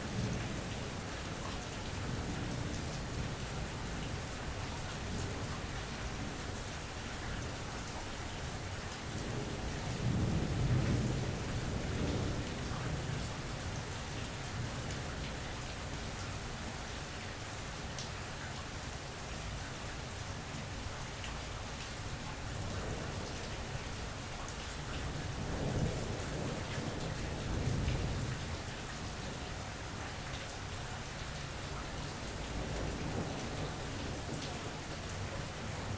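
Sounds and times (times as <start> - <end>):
steady rain: 0.0 - 35.9
rolling thunder: 9.2 - 13.9, 32.5 - 35.9.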